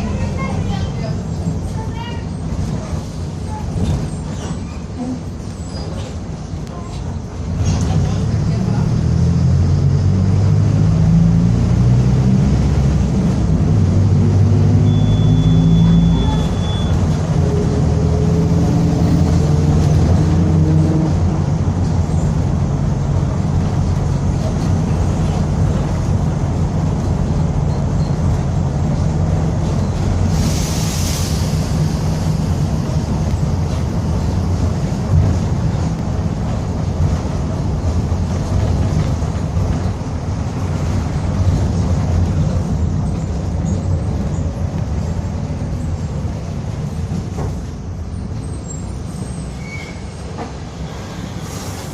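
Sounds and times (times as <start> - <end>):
bus engine growling: 0.0 - 51.9
short air hiss: 30.3 - 32.0.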